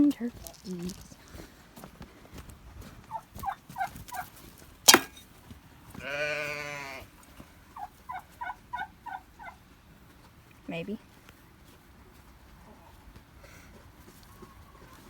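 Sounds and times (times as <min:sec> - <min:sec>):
turkeys yelping: 0:03.0 - 0:05.0, 0:07.0 - 0:09.7
sharp knock: 0:04.9 - 0:05.2
harsh turkey call: 0:07.8 - 0:09.6.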